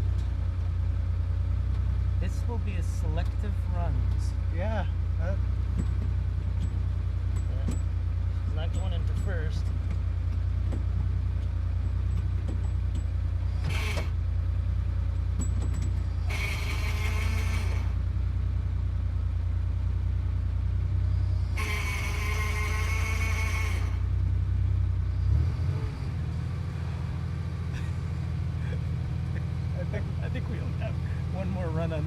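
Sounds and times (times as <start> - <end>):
sports car engine idling: 0.0 - 25.4, 26.2 - 32.0
harsh high gear grinding: 5.7 - 14.3, 15.1 - 18.1, 21.2 - 24.2.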